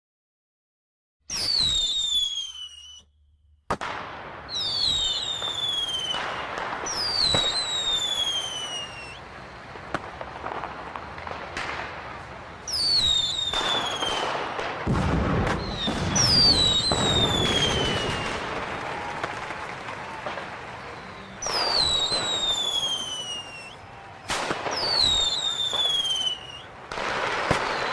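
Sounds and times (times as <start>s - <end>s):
firework bangs: 1.3s - 3.0s, 3.7s - 27.9s
firework crackling: 1.3s - 3.0s, 3.7s - 27.9s
firework whistles falling in pitch: 1.3s - 3.2s, 4.5s - 9.2s, 12.6s - 14.8s, 15.4s - 27.9s.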